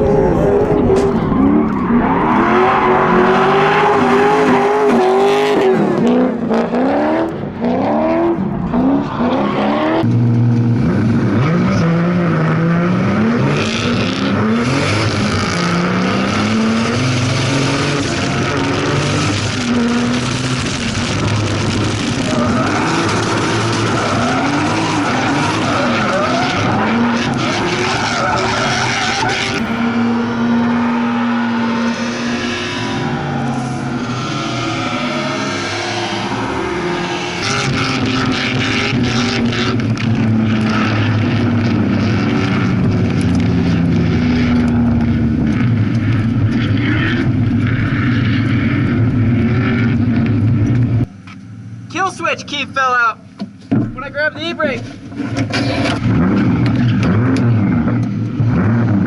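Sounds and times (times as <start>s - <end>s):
tyres squealing and skidding: 0.0s - 5.7s, 22.1s - 39.8s
car engine revving hard: 0.0s - 50.9s, 55.1s - 59.0s.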